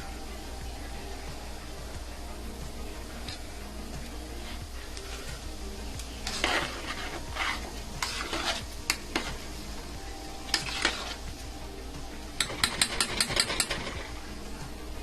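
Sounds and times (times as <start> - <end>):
spoon stirring in a pot: 3.2 - 9.8, 10.4 - 11.5, 12.3 - 14.2
spoon clinking against pot: 12.4 - 14.0.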